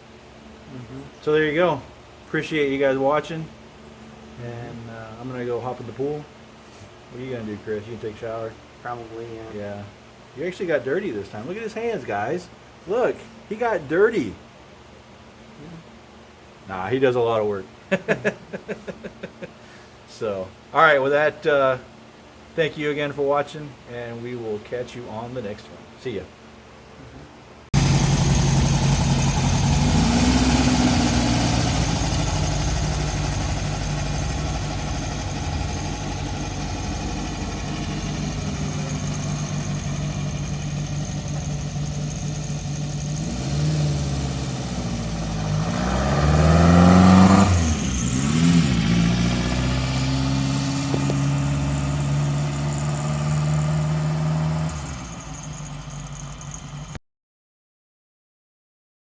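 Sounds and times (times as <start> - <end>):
car engine running and revving: 27.8 - 57.0.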